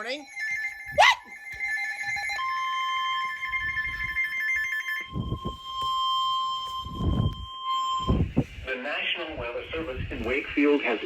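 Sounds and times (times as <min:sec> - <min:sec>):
steady warning alarm tone: 0:01.8 - 0:08.5.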